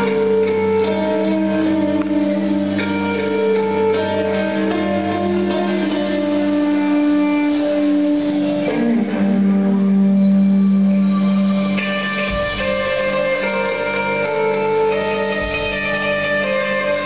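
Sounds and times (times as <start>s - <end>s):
rock band guitar notes ringing: 0.0s - 17.0s.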